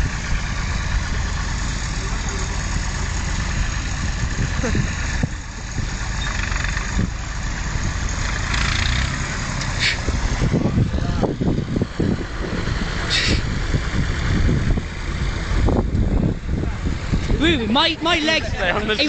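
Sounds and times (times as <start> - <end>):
tractor engine running: 0.0 - 19.0
brief hisses: 13.1 - 13.4.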